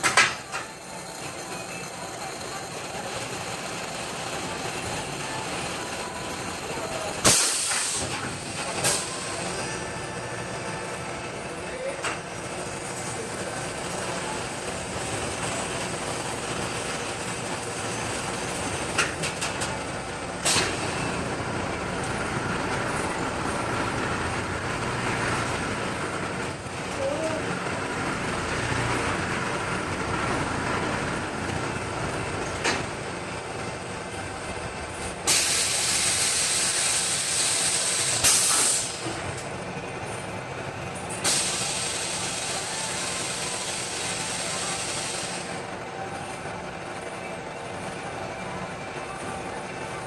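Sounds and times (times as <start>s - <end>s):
loud burst of hissing air: 7.2s - 8.2s, 35.2s - 39.1s, 41.2s - 45.6s.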